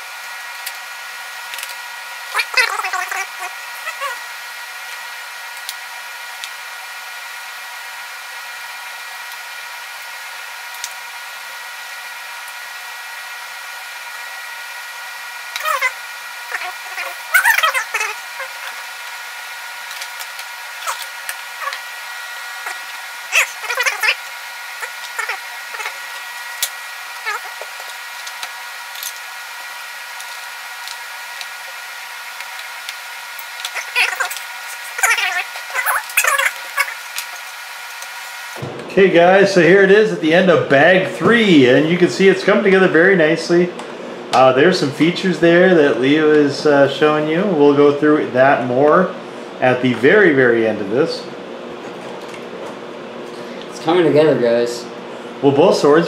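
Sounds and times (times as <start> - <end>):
motor whirring with whine: 0.0 - 38.8
squeaky sped-up voices: 2.3 - 4.3, 15.6 - 19.0, 20.8 - 27.8, 33.4 - 37.6.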